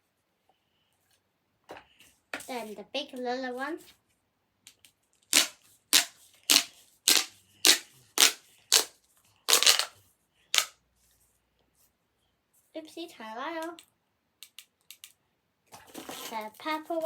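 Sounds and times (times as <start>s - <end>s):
pop tube toy snapping: 5.3s - 8.9s, 9.5s - 9.9s.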